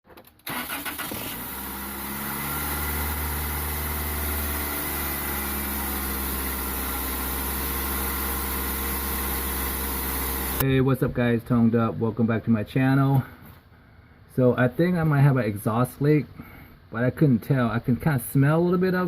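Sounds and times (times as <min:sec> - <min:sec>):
car engine idling: 0:00.5 - 0:10.6.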